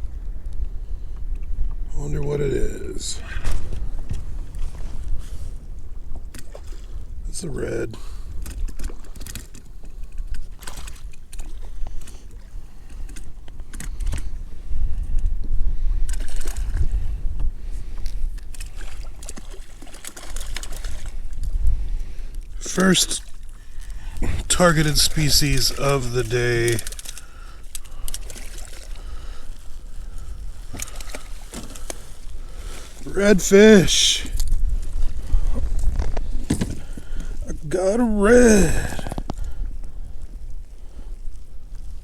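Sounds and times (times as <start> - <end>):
wind buffeting microphone: 0.0 - 7.4, 12.8 - 19.2, 20.8 - 22.6, 34.2 - 42.0
water lapping against a hull: 0.0 - 42.0.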